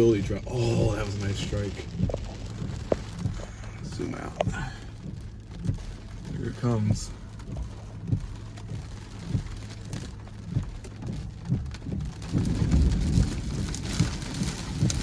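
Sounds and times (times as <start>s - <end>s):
rain: 0.0s - 15.0s
wind gusting across microphone: 11.8s - 15.0s.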